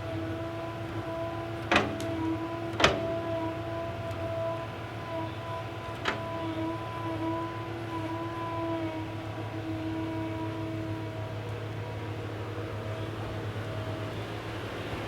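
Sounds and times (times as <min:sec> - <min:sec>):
small electric motors whining: 0:00.0 - 0:12.2
sharp knocks: 0:01.7 - 0:02.2.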